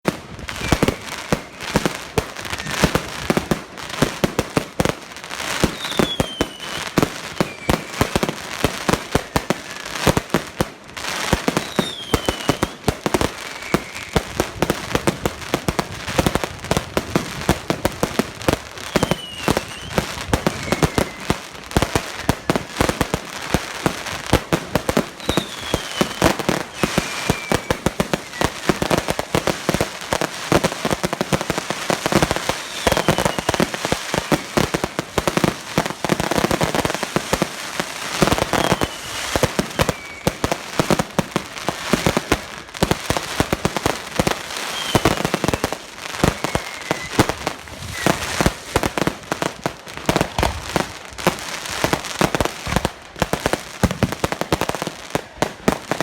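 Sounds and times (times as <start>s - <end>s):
fireworks crackling bangs: 0.0s - 56.0s
short falling whistle: 18.9s - 21.3s, 25.2s - 28.6s, 32.5s - 33.6s, 38.5s - 40.4s, 44.7s - 45.2s, 46.3s - 48.5s.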